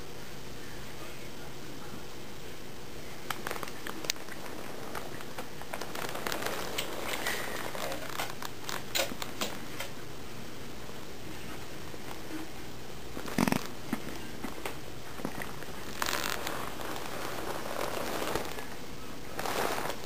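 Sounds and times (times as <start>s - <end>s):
background hiss: 0.0s - 20.0s
light clicks and crinkling: 3.2s - 10.0s.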